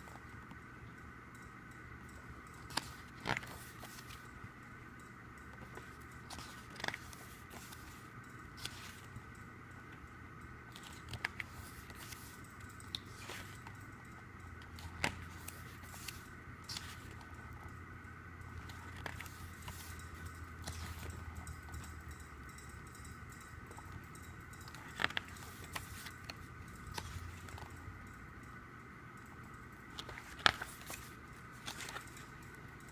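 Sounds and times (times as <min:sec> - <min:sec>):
background hum: 0:00.0 - 0:32.9
paper pages rustling: 0:02.6 - 0:04.3, 0:05.6 - 0:09.2, 0:10.7 - 0:12.4, 0:13.0 - 0:13.7, 0:14.6 - 0:17.4, 0:18.6 - 0:21.8, 0:24.6 - 0:27.7, 0:29.9 - 0:32.4.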